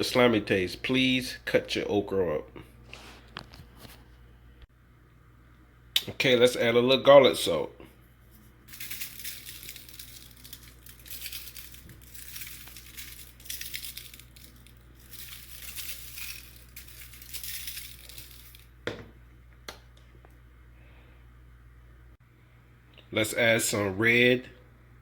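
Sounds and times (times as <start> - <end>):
salt shaker rattling: 8.7 - 18.7.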